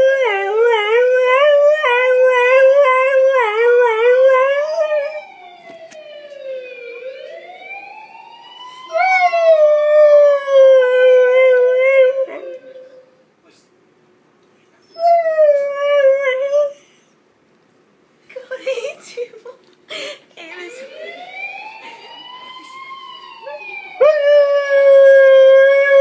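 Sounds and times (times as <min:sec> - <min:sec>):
faint siren wail: 0:00.0 - 0:13.3, 0:20.5 - 0:26.0.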